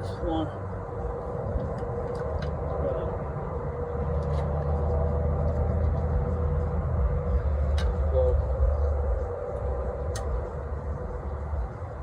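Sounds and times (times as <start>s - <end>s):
low engine-like drone: 0.0s - 12.0s
steady hum: 0.0s - 12.0s
sharp metallic click: 10.1s - 10.4s.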